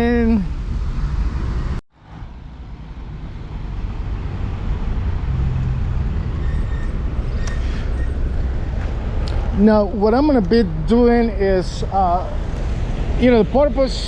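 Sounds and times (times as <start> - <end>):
passing vehicles rumbling: 0.0 - 14.0.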